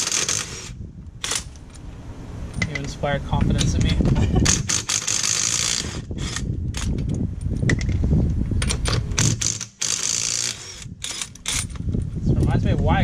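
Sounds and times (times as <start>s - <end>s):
impact wrench bursts: 0.0s - 1.5s, 4.4s - 6.5s, 8.9s - 11.8s.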